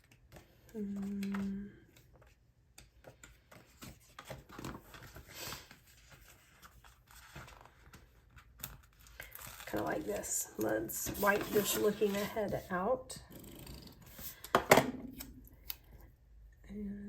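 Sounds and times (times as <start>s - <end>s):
stickers clicking and peeling: 0.0s - 3.6s
paper sticker sheets rustling: 0.0s - 13.0s.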